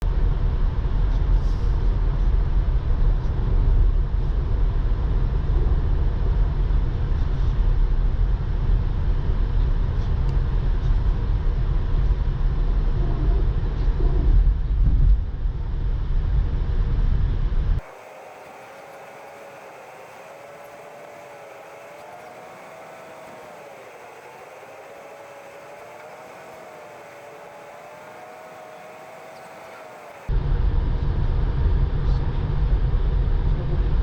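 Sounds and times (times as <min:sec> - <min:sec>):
tyre and road noise: 0:17.8 - 0:30.3.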